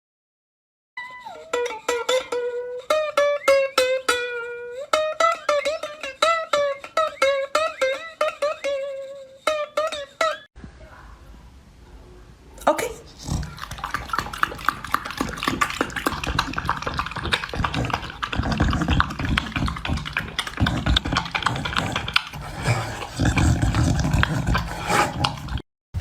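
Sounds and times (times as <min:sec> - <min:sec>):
pet animal making rough noises: 0:13.0 - 0:25.6.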